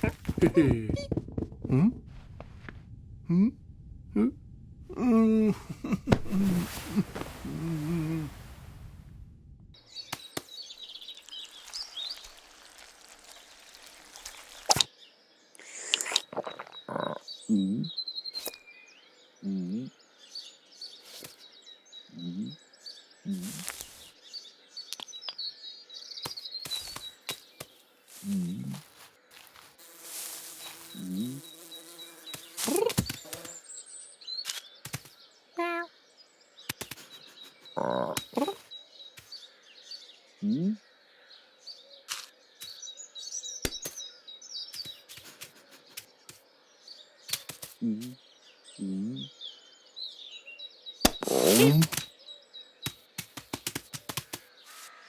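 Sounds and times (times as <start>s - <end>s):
short low vocal sound: 3.2s - 8.6s, 19.4s - 19.9s, 48.8s - 49.3s
small birds chirping: 4.9s - 8.7s, 9.8s - 55.0s
sharp clicks and taps: 36.7s - 37.2s, 52.9s - 54.4s.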